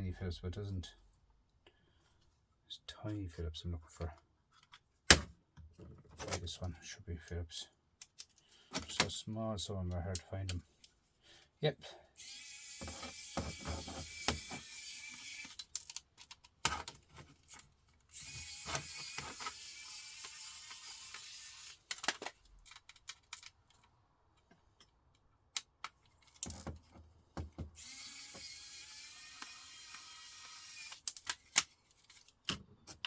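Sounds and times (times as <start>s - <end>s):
clicks of small parts and screws: 8.0s - 9.1s, 12.4s - 26.9s, 27.8s - 33.0s.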